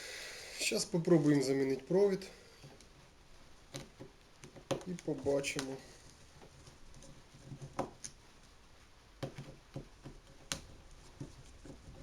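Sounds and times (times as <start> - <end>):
light clicks and knocks of parts: 3.7 - 8.6.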